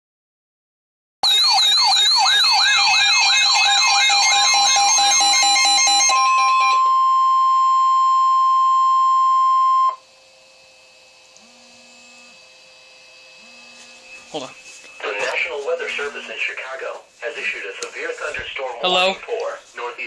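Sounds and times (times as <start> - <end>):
warbling siren alarm: 1.2 - 16.6
steady warning tone: 1.2 - 20.0
faint radio hiss: 10.0 - 20.0.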